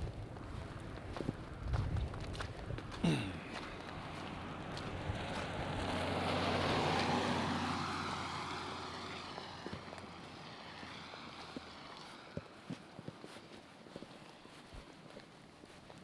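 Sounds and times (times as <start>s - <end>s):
vehicle driving past: 3.7s - 12.4s.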